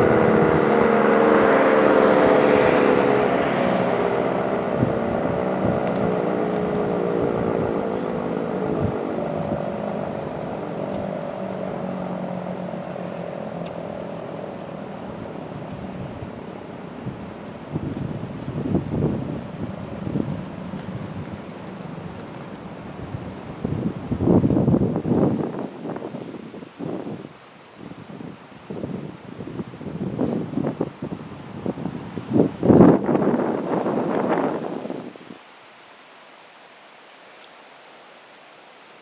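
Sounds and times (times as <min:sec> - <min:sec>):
tornado siren winding down: 0:00.0 - 0:24.8.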